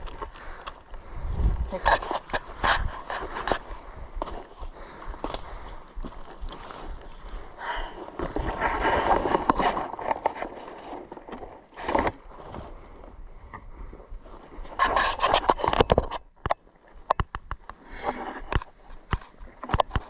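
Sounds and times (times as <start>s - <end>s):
rustling through undergrowth: 0.0s - 13.1s.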